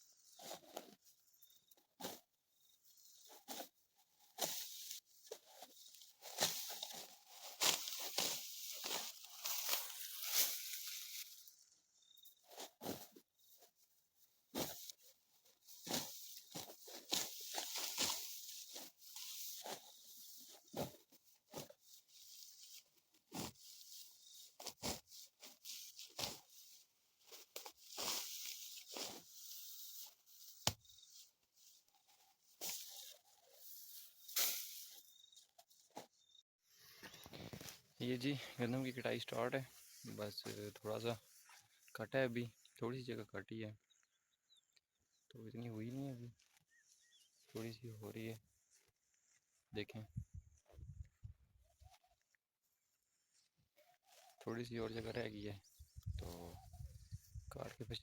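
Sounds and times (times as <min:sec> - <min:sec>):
sickle cutting dry stalks: 0:02.9 - 0:11.6, 0:14.5 - 0:36.1, 0:37.0 - 0:41.7.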